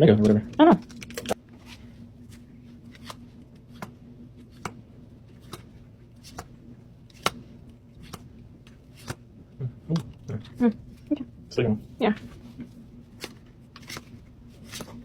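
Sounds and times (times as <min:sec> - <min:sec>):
faint steady hum: 0:00.0 - 0:15.0
trading cards snapping: 0:02.9 - 0:04.8, 0:05.4 - 0:06.5, 0:07.1 - 0:09.3, 0:13.1 - 0:15.0.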